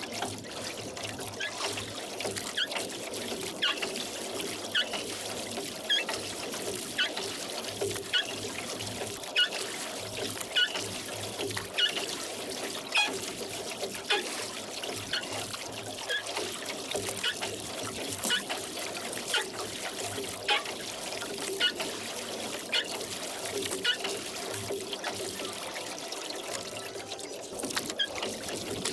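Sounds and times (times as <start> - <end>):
oars splashing: 0.0 - 28.9
water dripping off oar blades: 0.0 - 28.9.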